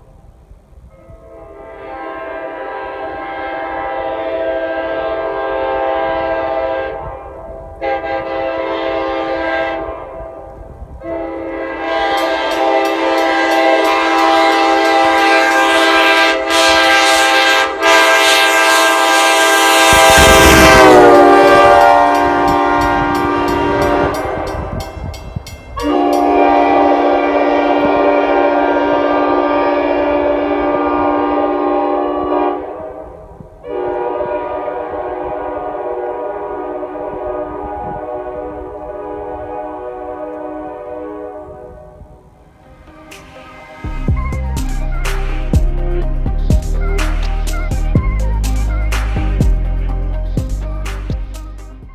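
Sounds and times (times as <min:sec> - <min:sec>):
passing train rumble: 0:00.0 - 0:51.9
locomotive horn blasts: 0:01.0 - 0:42.3.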